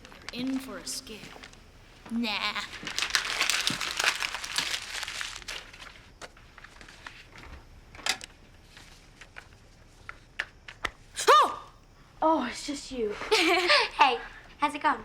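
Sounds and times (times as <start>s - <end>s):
paper crumpling: 2.5s - 7.3s.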